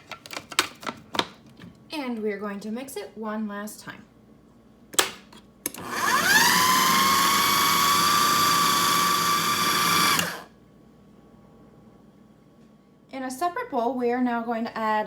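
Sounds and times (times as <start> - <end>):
food processor motor whine: 5.7 - 10.5.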